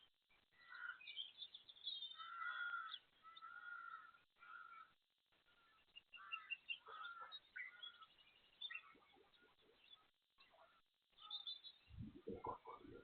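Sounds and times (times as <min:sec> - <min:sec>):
faint bird calls: 0:00.5 - 0:01.3, 0:02.0 - 0:13.0.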